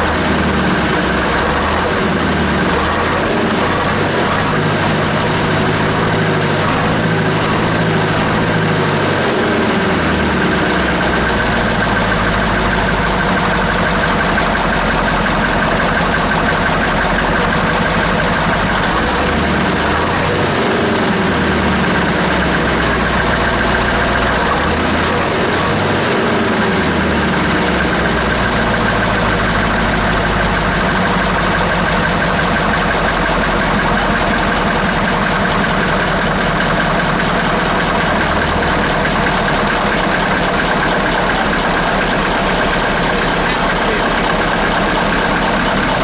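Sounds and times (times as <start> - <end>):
diesel engine running: 0.0 - 46.0.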